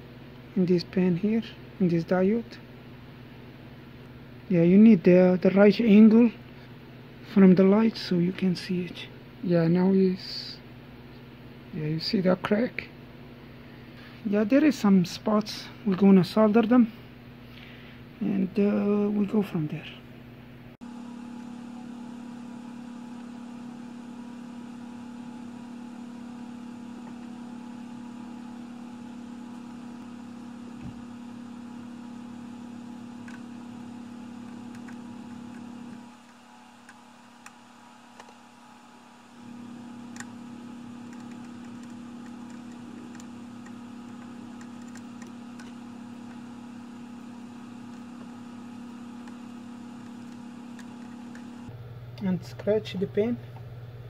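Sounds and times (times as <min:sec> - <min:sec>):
small motor humming: 0:20.8 - 0:54.0
faint clicks and ticks: 0:34.4 - 0:38.4, 0:41.0 - 0:46.4.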